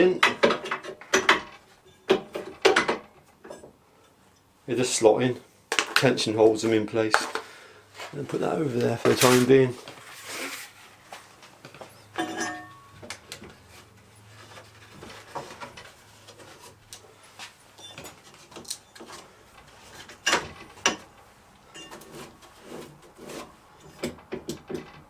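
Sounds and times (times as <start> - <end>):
metal clicks and knocks: 0.1 - 3.7, 23.8 - 25.0.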